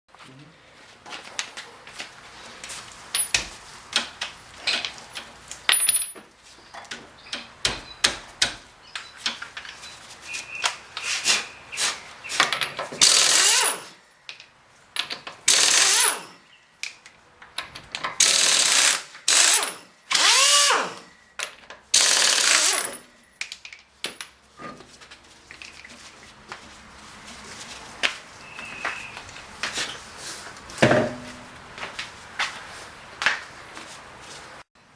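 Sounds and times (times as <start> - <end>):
power tool bursts: 13.0 - 13.9, 15.5 - 16.4, 18.2 - 21.1, 22.0 - 23.1.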